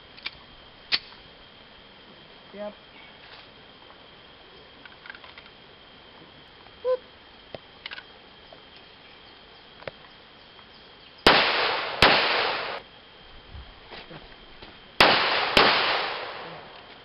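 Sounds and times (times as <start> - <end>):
pistol shots with ringing tail: 11.2 - 12.8, 15.0 - 16.7.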